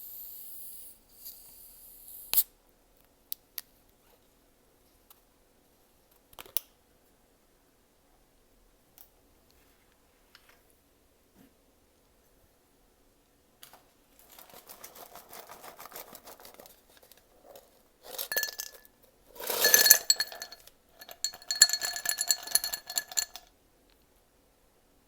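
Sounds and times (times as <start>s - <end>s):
glass clinking and ringing: 18.1s - 18.8s, 19.4s - 23.4s.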